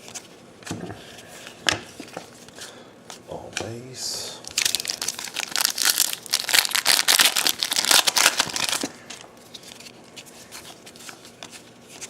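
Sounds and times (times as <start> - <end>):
foil wrapper crinkling and tearing: 4.4 - 9.9.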